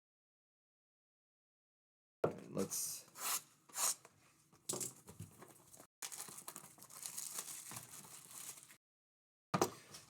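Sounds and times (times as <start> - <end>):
plastic wrapper crinkling: 6.0 - 8.8
plastic wrapper ripping: 6.0 - 8.8.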